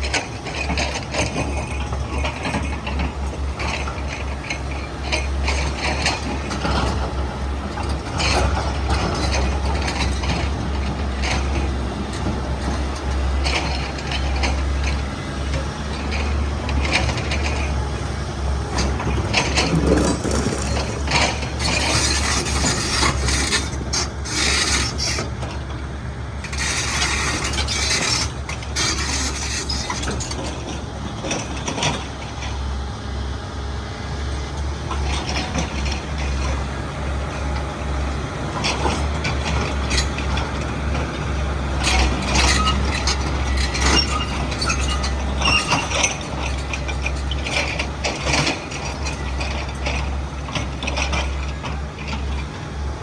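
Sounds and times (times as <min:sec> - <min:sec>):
diesel engine under load: 0:00.0 - 0:53.0
clattering: 0:18.9 - 0:23.3.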